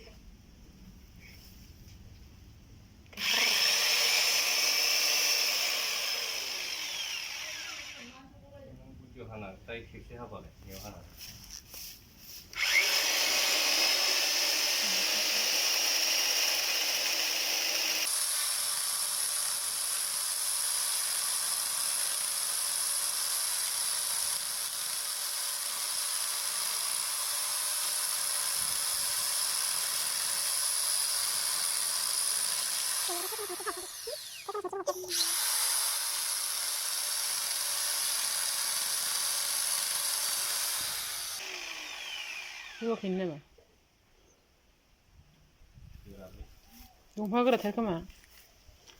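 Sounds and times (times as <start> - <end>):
electric chainsaw whining: 3.2 - 8.2, 12.5 - 43.3.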